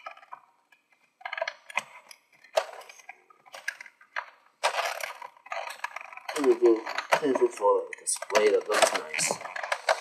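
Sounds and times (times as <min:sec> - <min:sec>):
packaging crinkling and rustling: 0:00.0 - 0:10.0.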